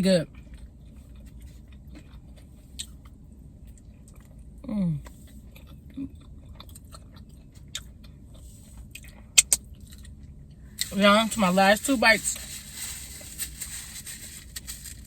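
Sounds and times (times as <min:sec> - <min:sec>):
person chewing food: 0:00.3 - 0:10.9
wet mouth clicks: 0:09.4 - 0:09.6.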